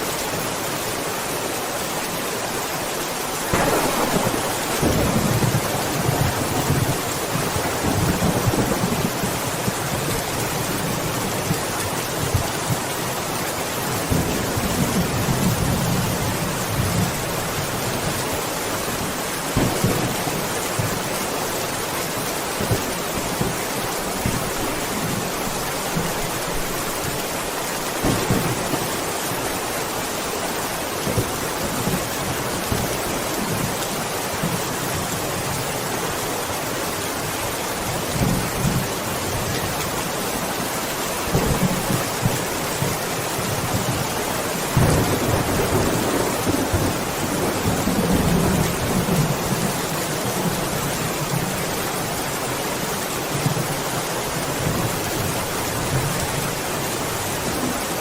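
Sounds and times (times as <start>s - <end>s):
steady rain: 0.0s - 58.0s
thunder rumbling: 3.5s - 11.6s, 27.9s - 29.5s, 44.7s - 49.8s.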